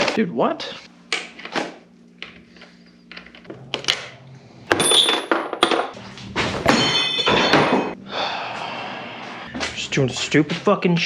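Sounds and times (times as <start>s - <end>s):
metal tools clanking: 4.7s - 6.0s, 6.6s - 8.0s.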